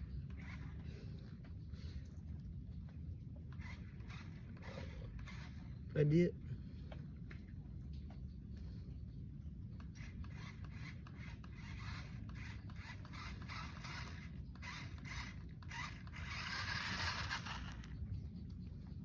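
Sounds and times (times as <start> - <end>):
toy car gears whirring: 0.0 - 0.9, 3.6 - 5.7, 9.8 - 18.0.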